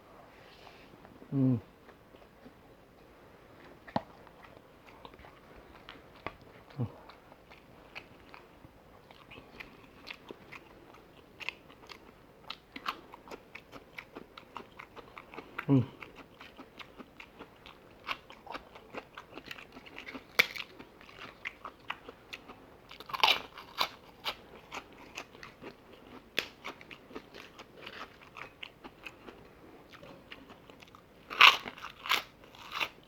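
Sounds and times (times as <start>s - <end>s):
chewing crunchy food: 3.5s - 33.0s.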